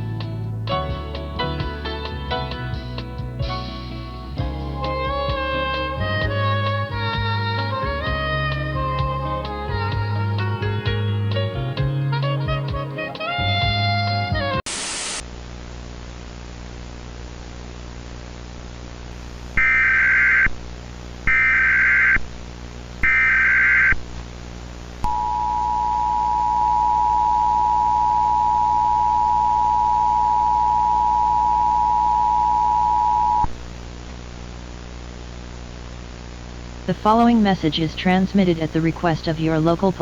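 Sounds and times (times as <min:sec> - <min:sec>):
hiss and hum: 0:00.0 - 0:23.3, 0:23.9 - 0:40.0
burst of static: 0:14.6 - 0:40.0.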